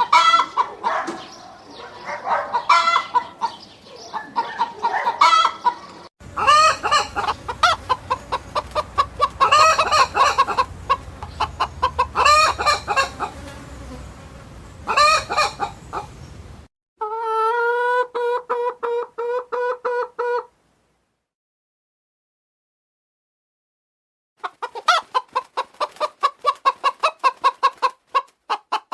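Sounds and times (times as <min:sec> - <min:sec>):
loud pitched chicken calls: 0:00.0 - 0:01.3, 0:02.5 - 0:14.0, 0:14.8 - 0:16.1, 0:17.0 - 0:20.5, 0:24.4 - 0:28.9
chickens clucking: 0:00.0 - 0:20.5, 0:24.4 - 0:28.9.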